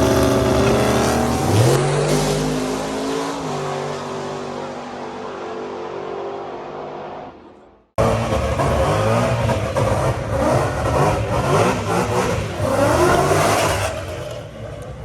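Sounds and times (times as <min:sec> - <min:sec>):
car engine running: 0:00.0 - 0:01.8
car engine revving hard: 0:00.0 - 0:06.8, 0:08.0 - 0:14.1.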